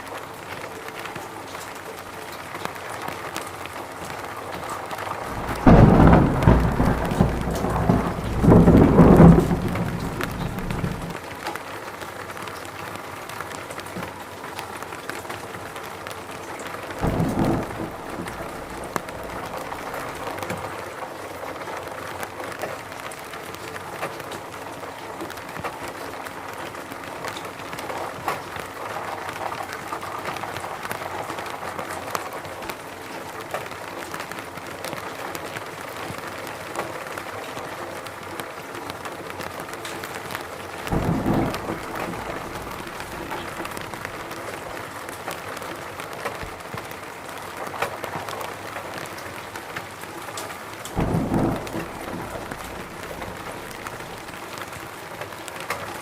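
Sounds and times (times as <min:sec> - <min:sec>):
rain falling: 0:00.0 - 0:56.0
low rumble: 0:05.3 - 0:11.2, 0:17.0 - 0:20.2, 0:40.9 - 0:44.3
sharp drop hits: 0:05.3 - 0:11.2.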